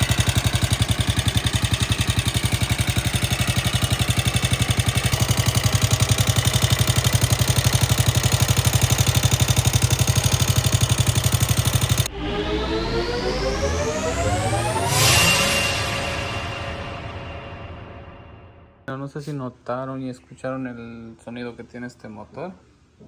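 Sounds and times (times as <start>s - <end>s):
mechanical clatter: 0.0s - 12.1s
motorcycle engine idling: 0.0s - 12.1s.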